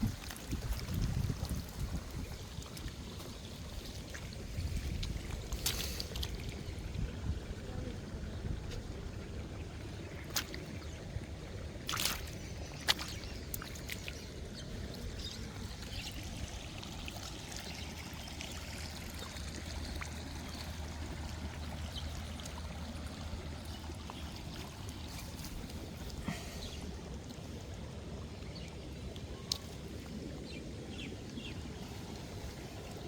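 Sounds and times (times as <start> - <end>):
water trickling and splashing: 0.0 - 33.0.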